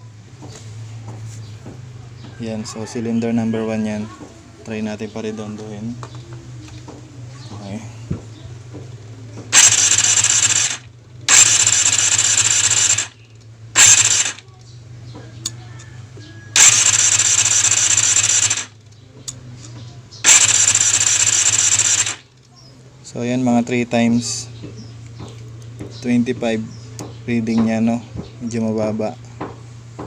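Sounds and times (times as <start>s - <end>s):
engine cranking on starter: 9.5s - 14.5s, 16.5s - 19.0s, 20.2s - 22.5s.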